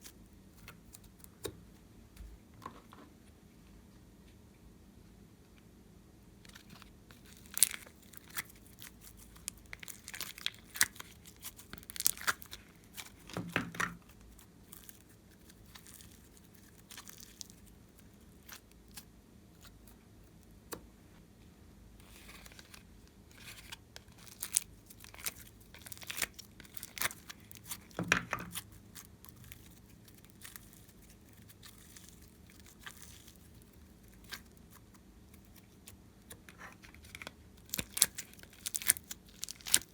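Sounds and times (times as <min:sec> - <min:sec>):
slime crackling and tearing: 0:06.5 - 0:19.9, 0:22.0 - 0:36.0, 0:36.8 - 0:39.9.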